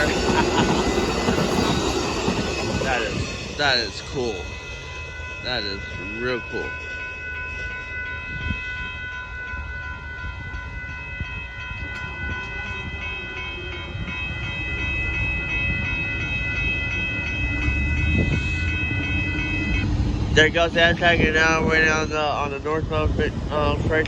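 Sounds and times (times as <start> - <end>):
crossing warning bell ringing: 0.0 - 24.0
passenger train rumble: 0.0 - 24.0.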